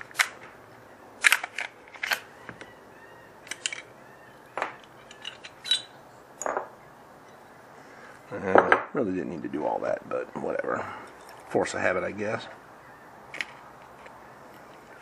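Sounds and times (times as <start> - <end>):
metallic clicks of pistol parts: 1.2 - 2.3, 3.4 - 3.9.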